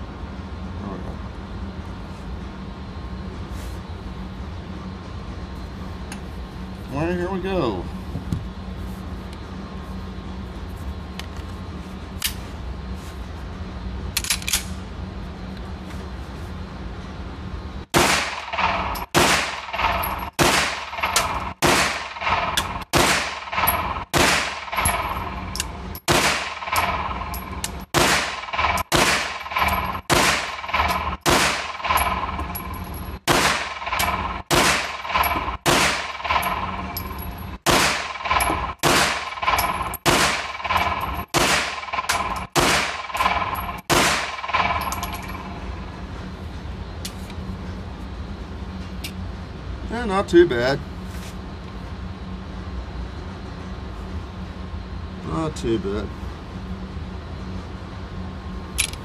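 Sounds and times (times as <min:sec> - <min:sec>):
pistol shots with echo: 0:17.9 - 0:25.2, 0:26.1 - 0:32.4, 0:33.3 - 0:36.8, 0:37.6 - 0:45.0.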